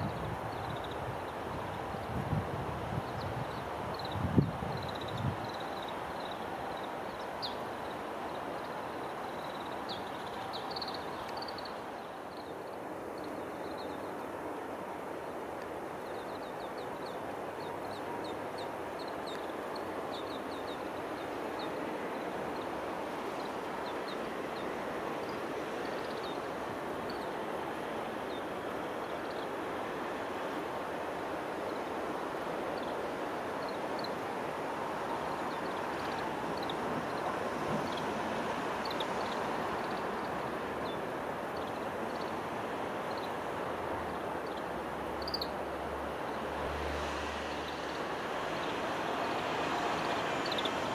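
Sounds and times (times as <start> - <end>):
steady rushing noise: 0.0 - 50.9
finches chirping: 3.0 - 14.3, 16.0 - 30.2, 32.6 - 42.4, 43.0 - 45.7, 48.5 - 50.9.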